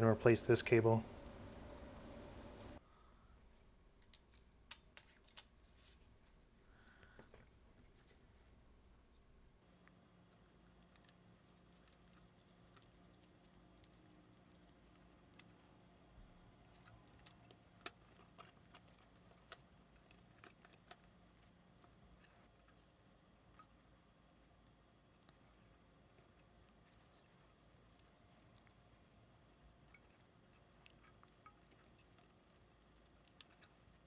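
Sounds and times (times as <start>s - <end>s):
low hum: 0.0s - 3.4s
small clicks and taps of tools: 4.0s - 5.5s, 29.8s - 34.0s.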